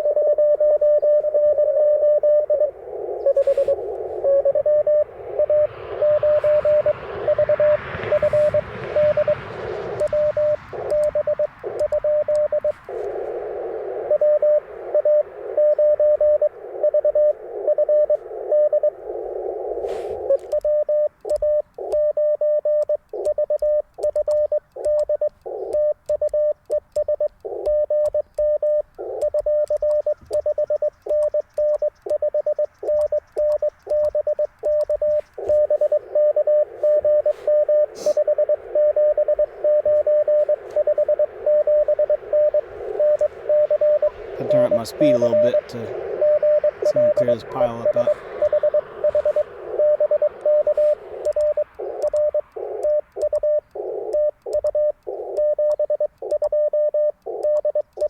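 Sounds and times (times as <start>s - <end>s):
morse code beeps: 0.0s - 58.0s
radio band hiss: 2.4s - 20.5s, 32.8s - 55.4s.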